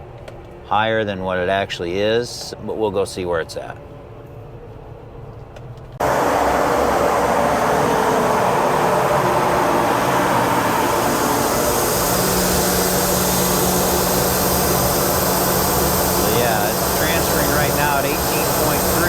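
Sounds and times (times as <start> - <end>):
grain dryer fan rushing hum: 6.0 - 19.0.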